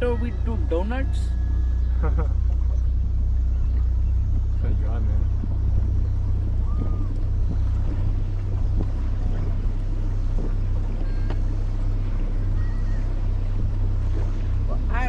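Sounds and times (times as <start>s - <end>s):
boat motor running: 0.0s - 15.0s
wind buffeting microphone: 0.0s - 15.0s.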